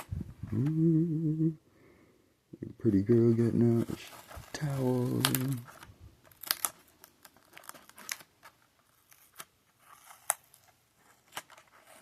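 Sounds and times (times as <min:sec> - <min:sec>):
plastic and card snips and rasps: 0:09.0 - 0:12.0.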